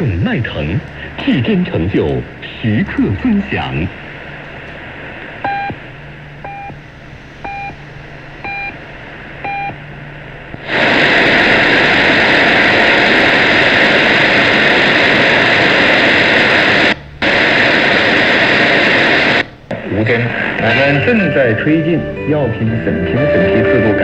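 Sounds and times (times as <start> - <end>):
radio static hiss: 0.0 - 24.0.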